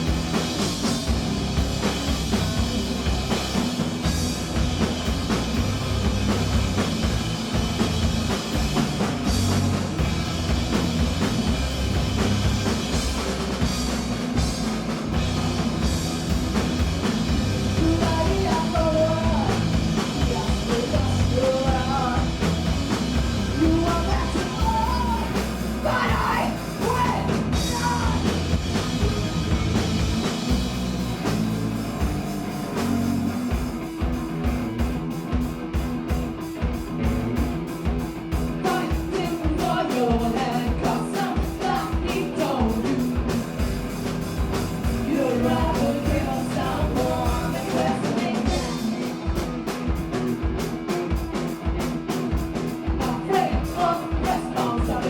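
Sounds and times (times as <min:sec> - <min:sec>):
fast drum beat: 0:00.0 - 0:55.0
punk rock band playing live: 0:00.0 - 0:55.0
person singing: 0:17.7 - 0:22.4, 0:23.6 - 0:28.4, 0:38.6 - 0:43.2, 0:45.0 - 0:49.0, 0:52.9 - 0:55.0.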